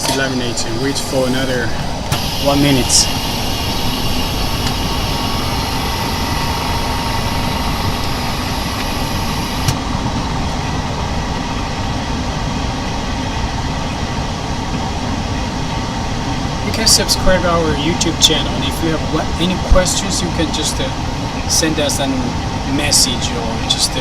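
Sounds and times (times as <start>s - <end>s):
laminating machine running: 2.0s - 9.8s
high hiss: 2.1s - 9.7s.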